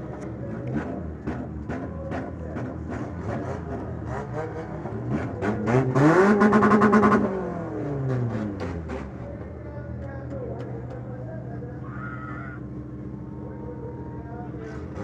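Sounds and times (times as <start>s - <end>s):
car engine revving: 0.0s - 9.3s.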